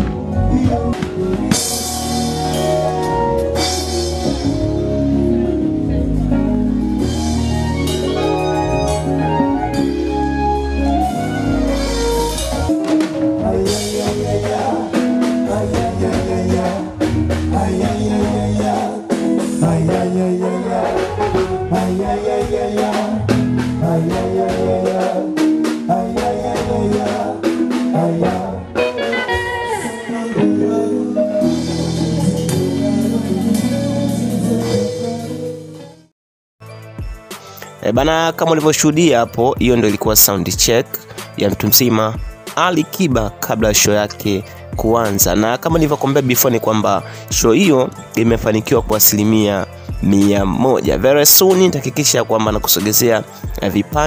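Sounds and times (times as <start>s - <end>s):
drum kit steady beat: 0.0s - 4.7s, 11.3s - 29.0s, 39.6s - 43.9s, 44.8s - 46.0s, 52.5s - 54.0s
live band music: 0.0s - 36.1s, 36.7s - 54.0s.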